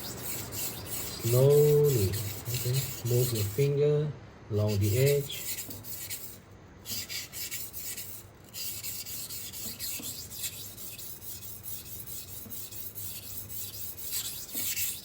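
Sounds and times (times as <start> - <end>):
knife scraping on whetstone: 0.0 - 3.8, 4.6 - 15.0.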